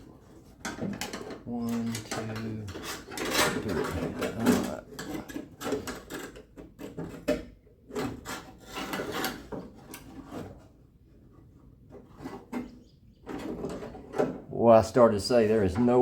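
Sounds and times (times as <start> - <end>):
metal latch parts scraping: 0.4 - 10.2.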